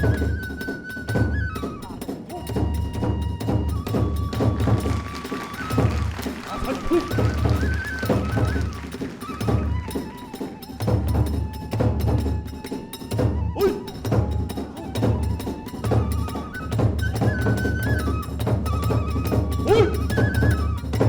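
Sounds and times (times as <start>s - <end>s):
bamboo flute melody: 0.0s - 21.0s
big drum beating: 4.3s - 9.9s.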